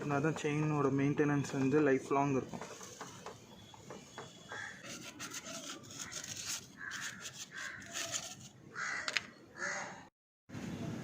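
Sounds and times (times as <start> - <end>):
chain being scrubbed: 4.8 - 8.6.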